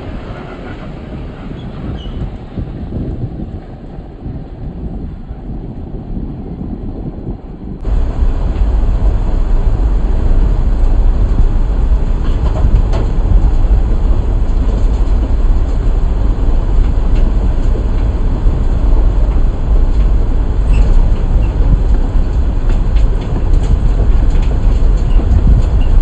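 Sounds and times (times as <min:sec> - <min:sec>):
vehicle low rumble: 0:00.0 - 0:26.0
light rattles and clicks: 0:10.2 - 0:26.0.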